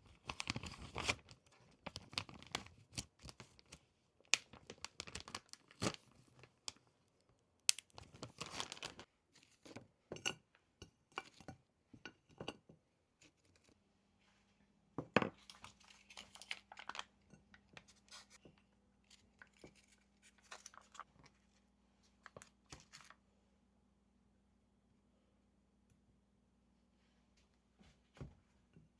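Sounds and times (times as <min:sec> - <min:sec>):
plastic packaging rustling and tearing: 0:00.0 - 0:06.8, 0:07.7 - 0:09.8, 0:15.4 - 0:18.4, 0:19.0 - 0:21.4, 0:22.2 - 0:23.2.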